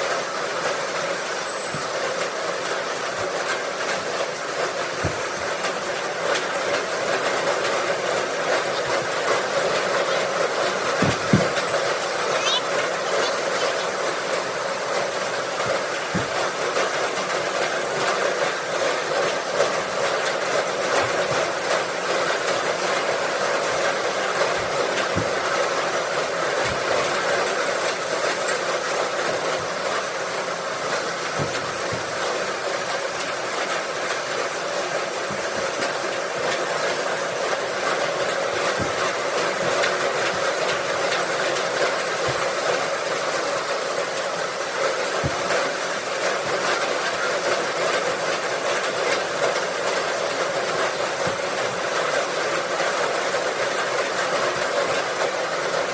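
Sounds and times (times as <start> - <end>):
farm machinery rattling: 0.1 - 55.9.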